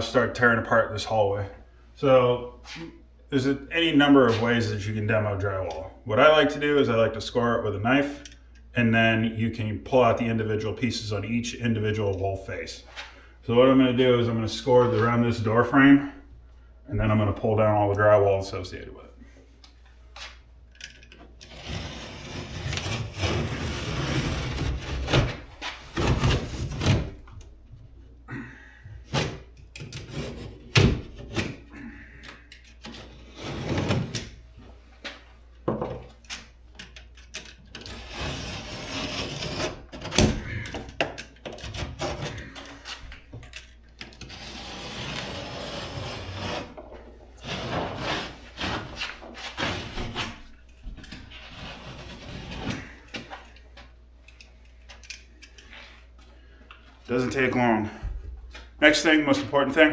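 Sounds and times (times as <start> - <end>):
utility knife scraping drywall: 21.4 - 27.2, 29.1 - 31.6, 32.9 - 34.3, 37.8 - 40.7, 41.4 - 42.9, 44.2 - 50.6, 51.3 - 53.1.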